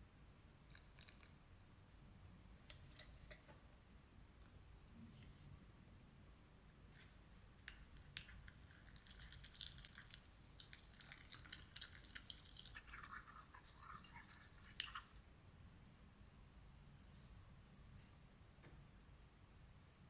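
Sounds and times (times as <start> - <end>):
squishy mixing and scraping: 7.9 - 15.2.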